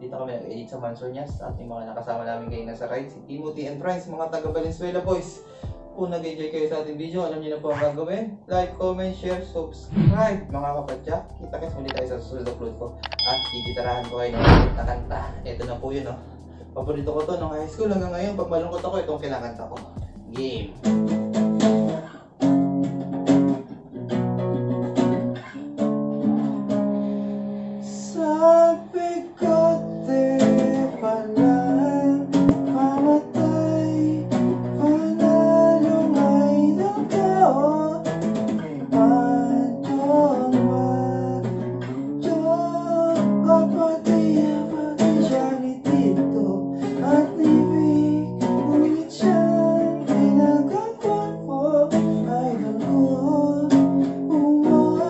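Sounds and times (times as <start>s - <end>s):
acoustic guitar strumming: 19.9s - 55.0s
person singing: 28.1s - 38.1s, 38.7s - 55.0s.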